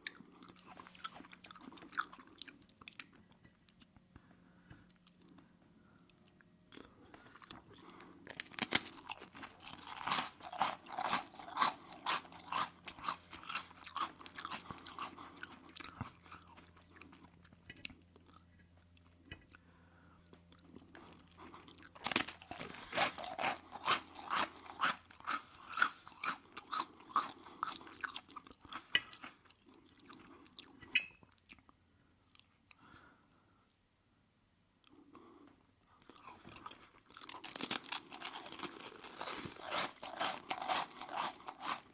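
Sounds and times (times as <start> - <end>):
rhythmic chewing: 0.0 - 19.7, 20.3 - 31.7, 34.8 - 41.9.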